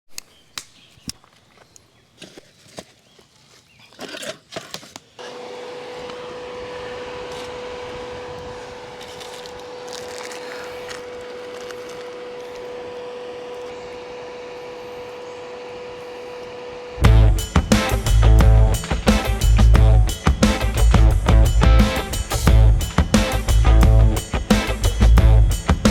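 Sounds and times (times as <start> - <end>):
small electric motor whirring: 5.2 - 20.4.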